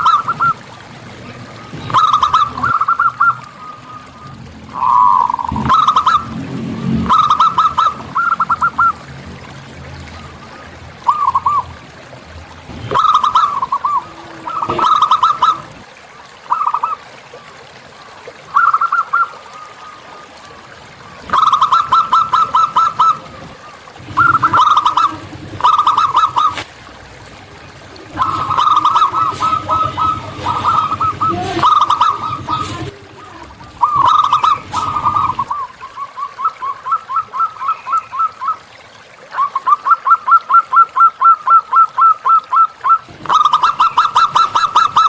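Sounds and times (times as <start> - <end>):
dove cooing: 0.0 - 6.3, 12.7 - 15.8, 18.6 - 38.6, 39.3 - 45.0.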